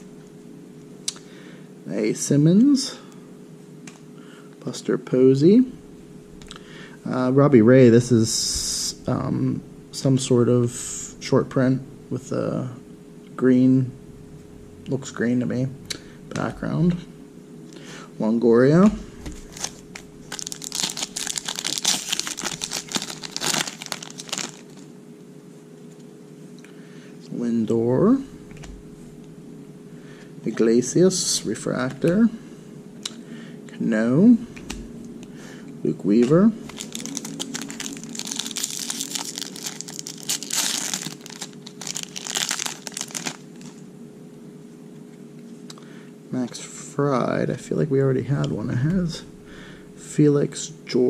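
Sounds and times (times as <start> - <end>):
cards and wrapper crinkling: 19.3 - 24.9, 36.7 - 43.8.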